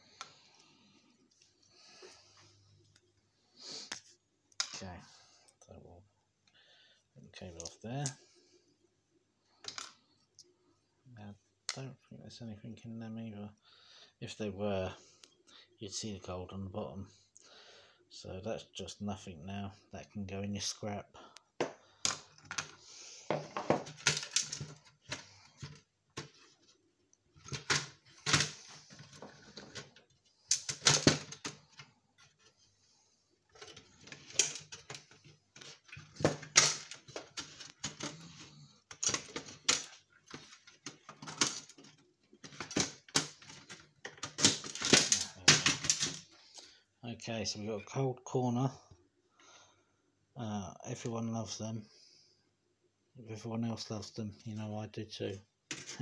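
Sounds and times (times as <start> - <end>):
electronic parts clattering: 21.6 - 32.6, 33.5 - 46.4, 55.7 - 56.0.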